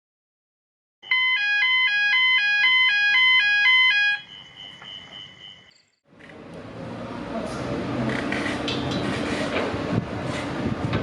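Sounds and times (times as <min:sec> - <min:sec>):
electronic two-tone warning signal: 0:01.0 - 0:05.1.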